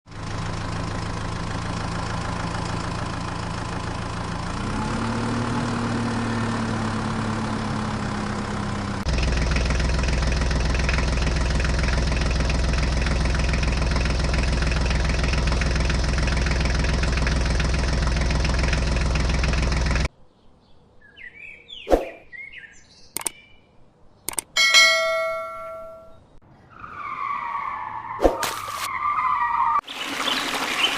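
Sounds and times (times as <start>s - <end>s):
tractor engine running: 0.1s - 20.1s, 24.3s - 26.2s
sharp clicks: 23.1s - 23.4s, 24.2s - 24.6s
ringing metallic clang: 24.6s - 26.4s.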